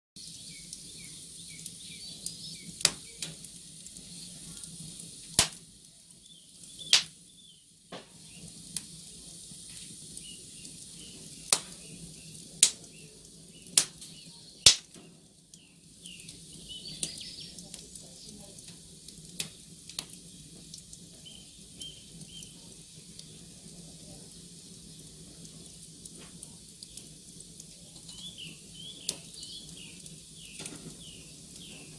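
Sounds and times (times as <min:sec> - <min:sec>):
fire crackling: 0:00.2 - 0:31.9
sharp pops from fire: 0:00.2 - 0:31.9.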